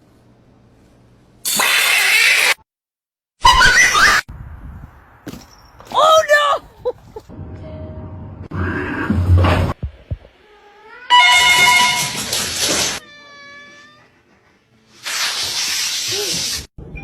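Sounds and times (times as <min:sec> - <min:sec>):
cat hissing: 0:01.5 - 0:02.6, 0:14.9 - 0:16.7
cat meowing and yowling: 0:12.8 - 0:14.2.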